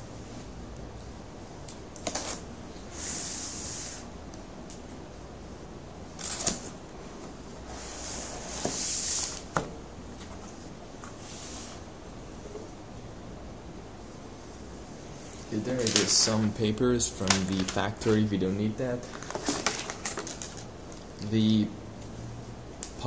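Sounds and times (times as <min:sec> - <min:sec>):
paper and packaging rustling: 0:06.2 - 0:06.8, 0:15.4 - 0:16.6, 0:17.2 - 0:20.7.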